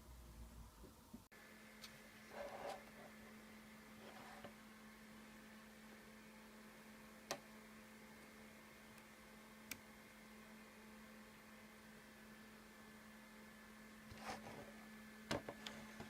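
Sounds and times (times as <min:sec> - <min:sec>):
low electrical hum: 0:00.0 - 0:16.0.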